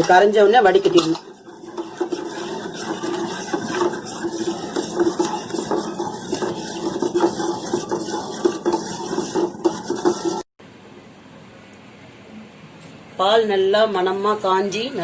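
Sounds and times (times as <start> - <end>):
metal spoon scraping metal pan: 0.0 - 10.5.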